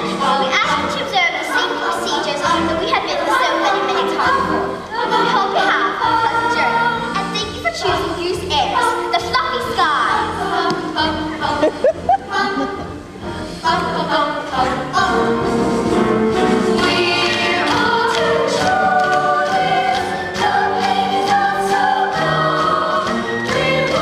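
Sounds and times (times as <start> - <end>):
voices singing together: 0.0 - 7.6, 8.4 - 24.0
instrumental accompaniment: 0.0 - 24.0.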